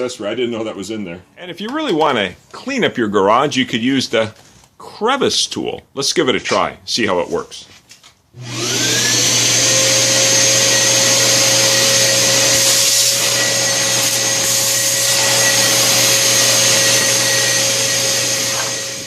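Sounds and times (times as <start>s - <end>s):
shop vacuum running: 8.4s - 19.0s.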